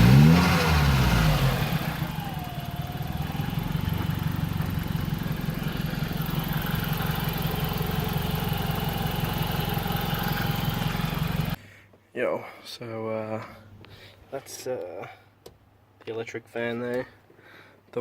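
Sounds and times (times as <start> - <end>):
car engine idling: 0.0 - 11.6.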